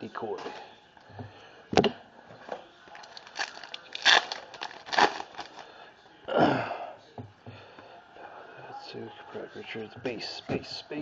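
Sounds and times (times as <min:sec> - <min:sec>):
card packaging crinkling: 0:02.9 - 0:05.7.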